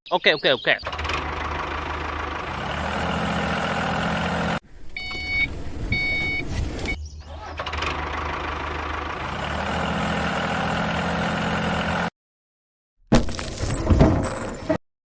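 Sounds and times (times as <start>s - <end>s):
small vehicle engine running: 0.8s - 12.1s.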